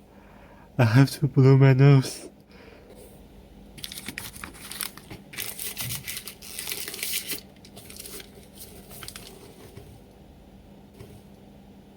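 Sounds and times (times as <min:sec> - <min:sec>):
paper tissue crinkling: 0:03.8 - 0:10.0.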